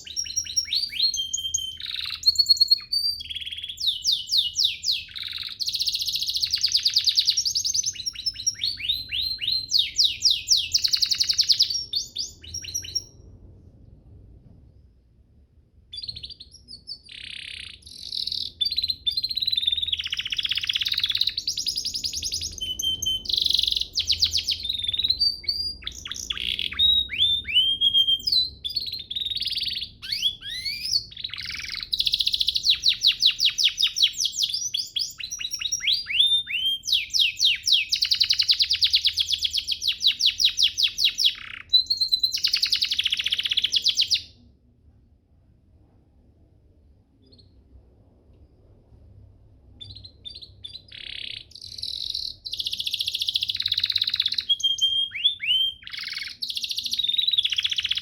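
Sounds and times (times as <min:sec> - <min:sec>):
canary singing trills: 0:00.0 - 0:13.3, 0:15.9 - 0:44.5, 0:49.7 - 0:58.0.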